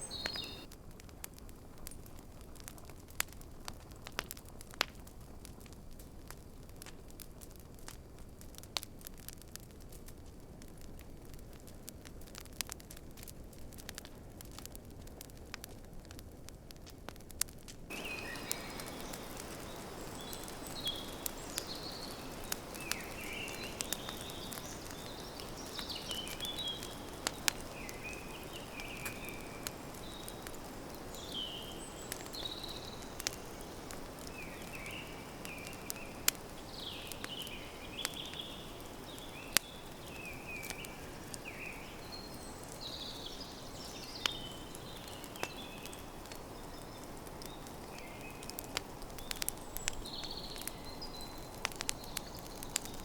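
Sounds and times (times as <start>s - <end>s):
bird chirping: 0.0s - 0.7s, 17.9s - 53.0s
campfire crackling and popping: 0.0s - 53.0s.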